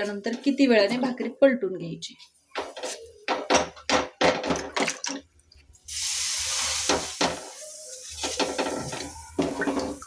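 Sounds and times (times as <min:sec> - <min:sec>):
water sizzling on hot griddle: 0:05.8 - 0:10.0.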